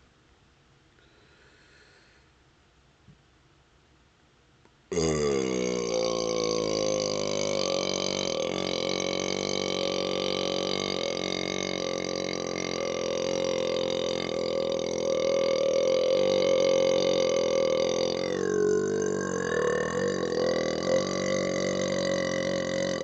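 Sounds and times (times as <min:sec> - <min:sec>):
man belching: 0:04.9 - 0:23.0.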